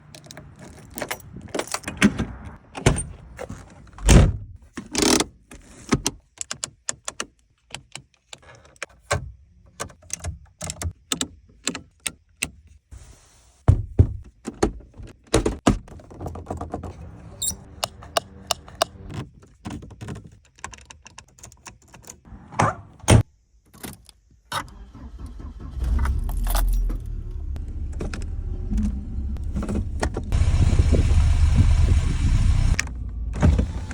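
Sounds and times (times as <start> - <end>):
low steady rumble: 25.6 - 33.4
keys jangling: 26.3 - 27.0.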